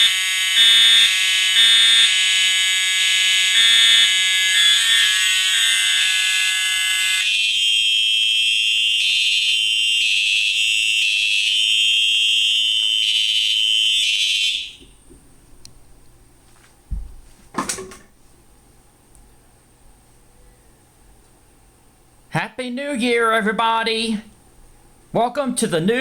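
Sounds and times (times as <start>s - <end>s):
fire alarms pulsing: 0.0s - 15.0s
thump and knock: 16.9s - 18.1s.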